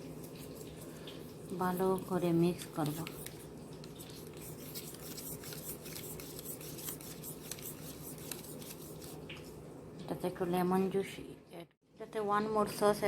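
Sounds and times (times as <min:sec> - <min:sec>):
utensil scraping a bowl: 0:02.5 - 0:09.3.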